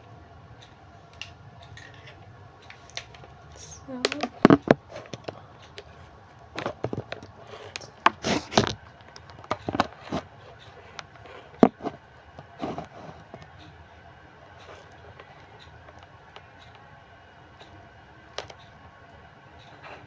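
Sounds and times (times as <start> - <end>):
clicks and knocks of handling: 4.0 - 13.7.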